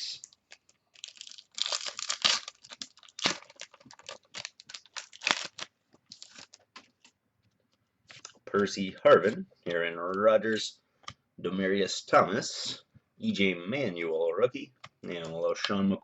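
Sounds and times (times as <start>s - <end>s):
plastic wrapper tearing and crinkling: 0.1s - 7.1s.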